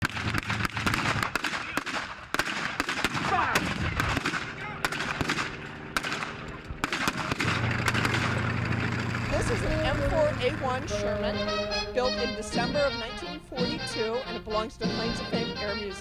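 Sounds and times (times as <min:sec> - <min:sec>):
blank gunshots: 0:00.0 - 0:09.2.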